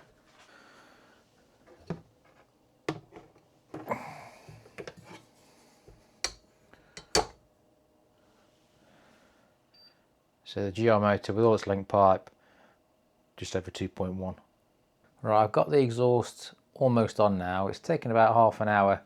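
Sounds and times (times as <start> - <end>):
metal parts knocking and clunking: 7.0 - 7.4.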